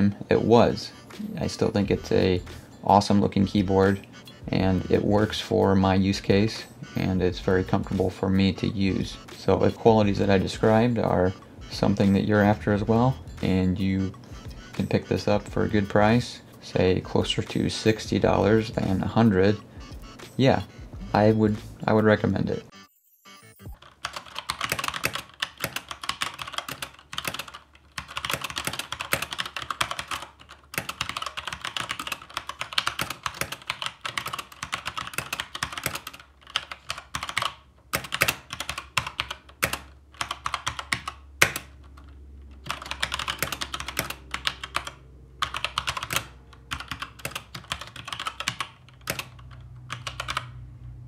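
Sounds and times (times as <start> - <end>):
mechanical keyboard typing: 23.7 - 50.6.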